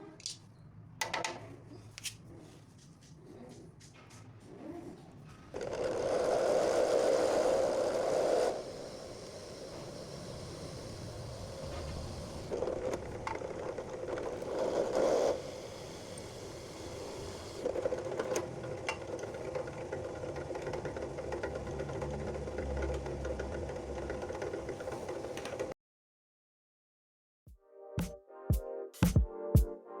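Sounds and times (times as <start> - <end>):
small electric motor running: 5.6 - 12.6, 14.2 - 17.7.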